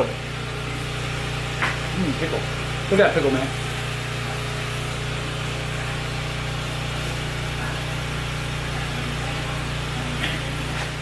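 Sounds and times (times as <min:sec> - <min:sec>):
generator engine droning: 0:00.0 - 0:11.0.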